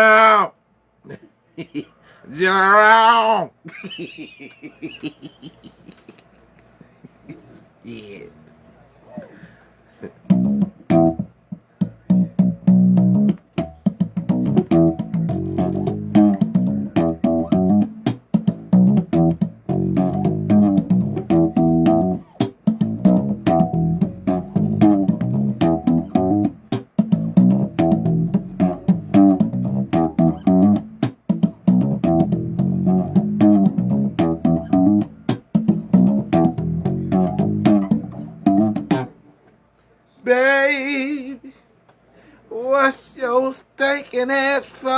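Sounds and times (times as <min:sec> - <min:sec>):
bass guitar riff: 0:10.2 - 0:39.2.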